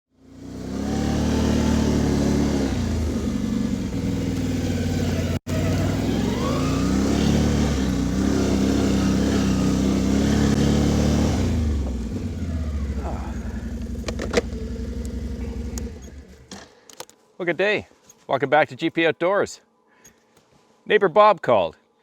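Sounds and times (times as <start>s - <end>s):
chainsaw engine revving: 0.2s - 16.4s.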